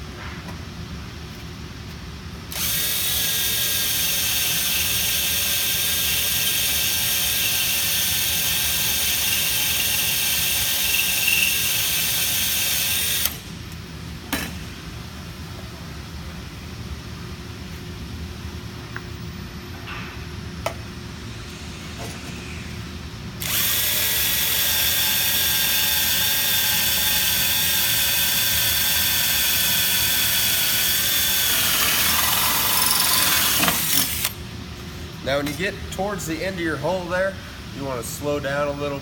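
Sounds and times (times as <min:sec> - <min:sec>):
electric drill boring metal: 0:02.5 - 0:13.4, 0:23.4 - 0:34.3.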